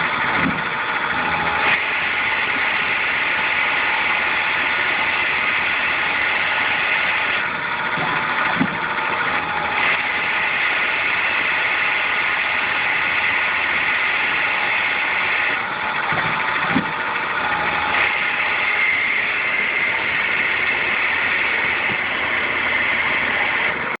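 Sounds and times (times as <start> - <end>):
lathe spindle whining: 0.0 - 24.0.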